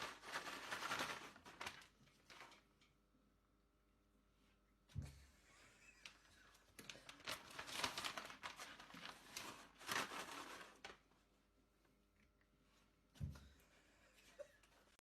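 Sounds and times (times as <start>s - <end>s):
crinkling and rustling: 0.0s - 3.0s, 6.0s - 11.3s.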